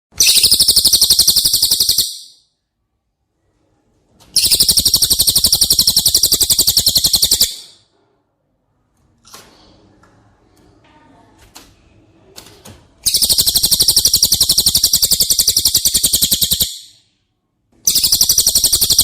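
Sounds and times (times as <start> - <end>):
bird rattling trills: 0.2 - 2.3, 4.4 - 7.8, 13.1 - 16.9, 17.9 - 19.0.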